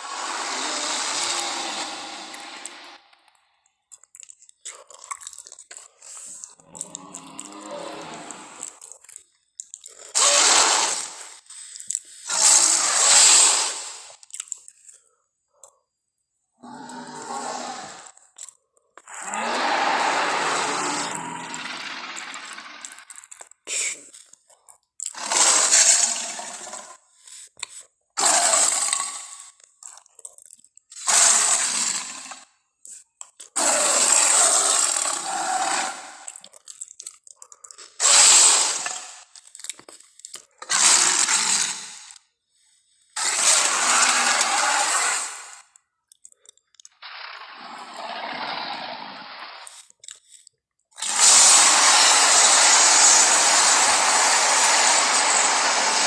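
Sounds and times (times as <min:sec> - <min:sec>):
rasping dinosaur roars: 0:00.0 - 0:03.0, 0:06.6 - 0:08.9, 0:16.6 - 0:18.2, 0:19.1 - 0:23.2, 0:25.2 - 0:27.0, 0:28.2 - 0:29.4, 0:33.6 - 0:36.4, 0:40.7 - 0:42.0, 0:43.2 - 0:45.6, 0:47.0 - 0:49.7, 0:51.0 - 0:56.0.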